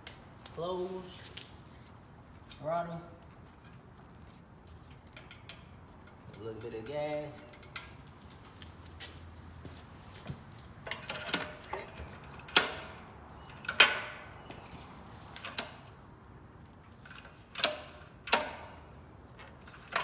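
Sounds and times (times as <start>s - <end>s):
sharp metallic clicks and clanks: 10.8s - 14.3s, 15.4s - 15.9s, 16.9s - 20.0s.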